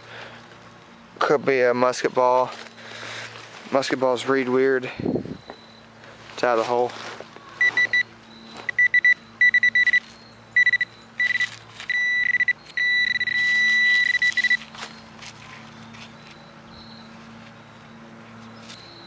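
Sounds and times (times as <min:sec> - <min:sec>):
metal detector beeping: 0:05.3 - 0:06.9, 0:07.6 - 0:19.0.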